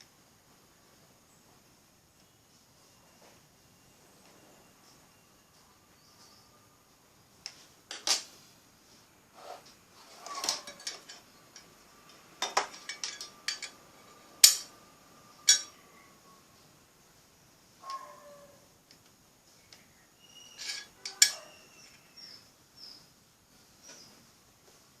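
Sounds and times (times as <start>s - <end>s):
small hard objects clinking: 12.4s - 14.7s.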